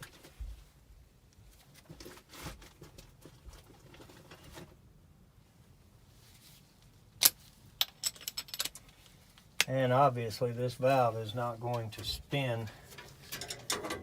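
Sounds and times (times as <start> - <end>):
tools and metal parts clicking: 7.2 - 9.0, 12.9 - 14.0.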